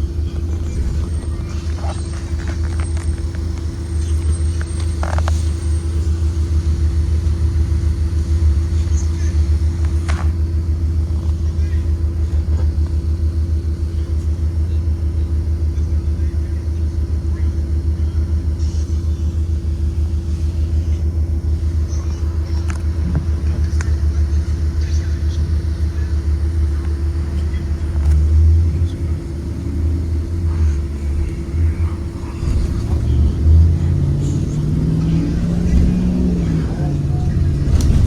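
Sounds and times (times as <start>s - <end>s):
bus engine droning: 0.0s - 38.0s.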